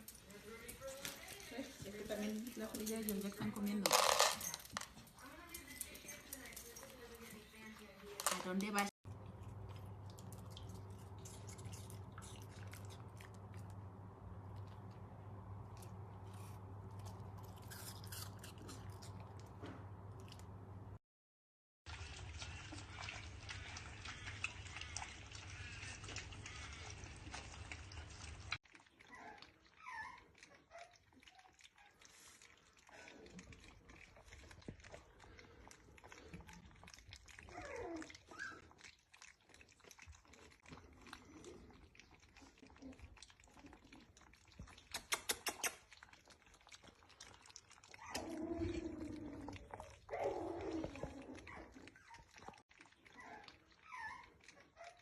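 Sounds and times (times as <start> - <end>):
dog chewing food: 0.0 - 20.6, 21.9 - 55.0
dog whining: 37.4 - 38.7, 48.0 - 52.5.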